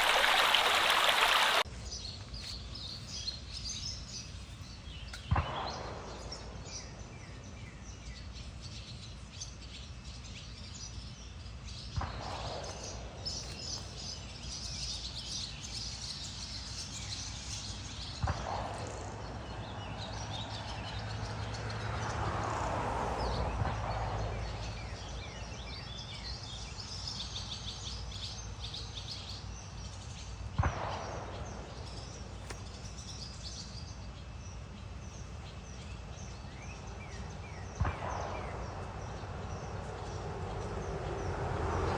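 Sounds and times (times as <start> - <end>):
birds chirping and calling: 0.0 - 22.2, 31.4 - 41.9.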